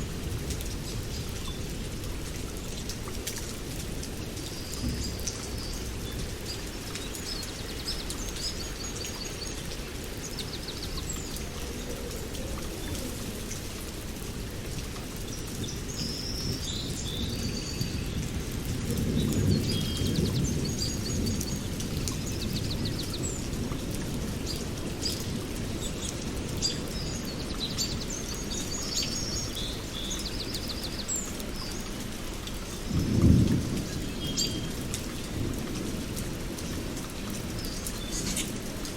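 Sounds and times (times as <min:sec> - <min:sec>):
steady rain: 0:00.0 - 0:38.9
thunder rolling: 0:32.9 - 0:36.5
birds chirping: 0:36.6 - 0:38.9.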